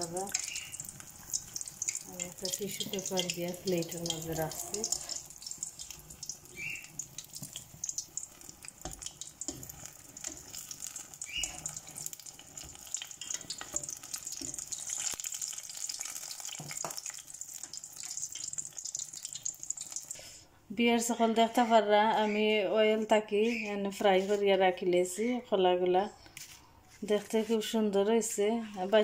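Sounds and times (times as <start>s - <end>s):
batter sizzling in hot oil: 0.0s - 20.4s.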